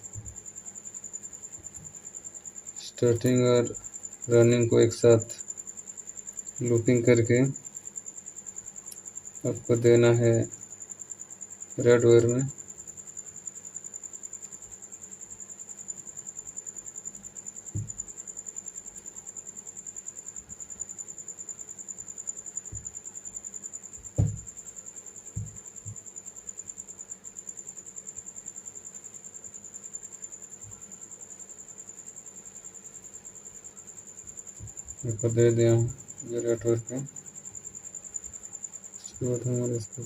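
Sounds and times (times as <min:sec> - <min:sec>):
soft knocks from handling wiring: 0:17.7 - 0:18.0, 0:24.0 - 0:24.6, 0:25.4 - 0:26.0.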